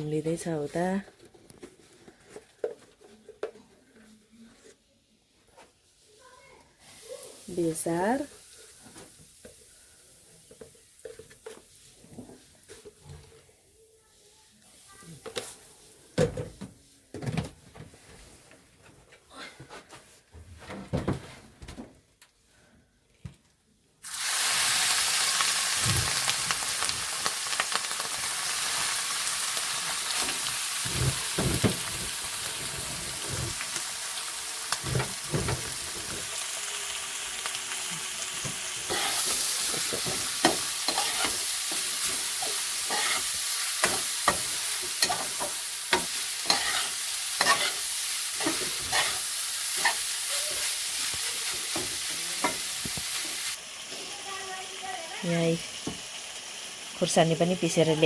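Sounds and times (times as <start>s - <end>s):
meat sizzling in oil: 6.8s - 9.4s, 24.0s - 58.0s
spoon scraping a pan: 38.9s - 53.4s.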